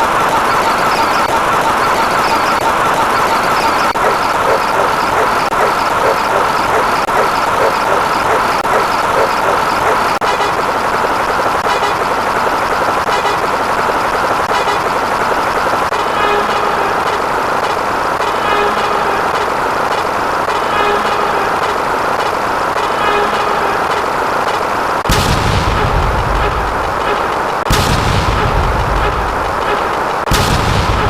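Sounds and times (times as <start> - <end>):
loud blasts: 0.0 - 21.8, 25.0 - 31.0
noisy rumble: 25.1 - 31.0.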